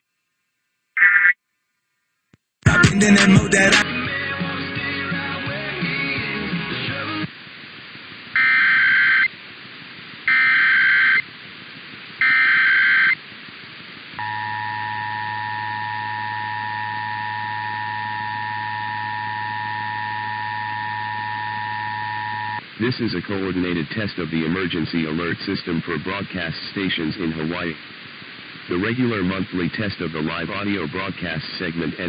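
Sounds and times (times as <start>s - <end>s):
music: 2.7s - 7.3s
two-tone attention signal: 14.2s - 22.6s
buzzy data bursts: 14.2s - 22.7s.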